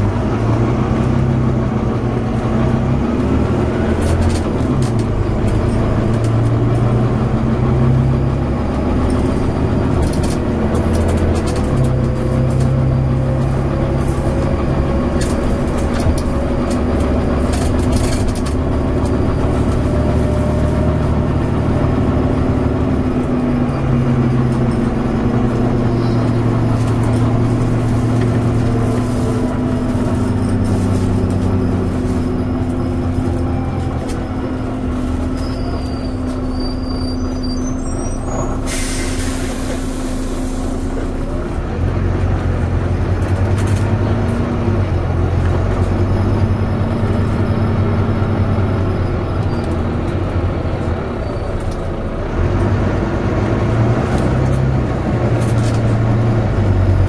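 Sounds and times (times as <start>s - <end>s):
bus diesel engine running: 0.0s - 57.0s
air brakes hissing: 37.2s - 41.2s.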